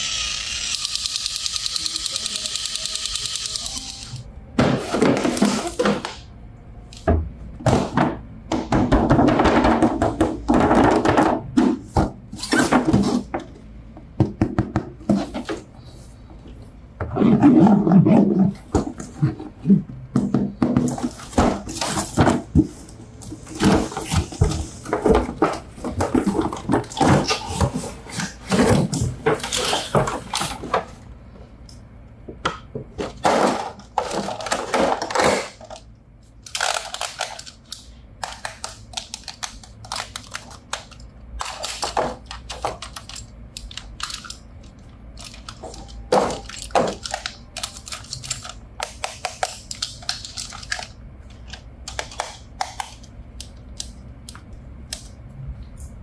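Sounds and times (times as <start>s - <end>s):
plastic parts clicking and tapping: 33.9s - 55.2s.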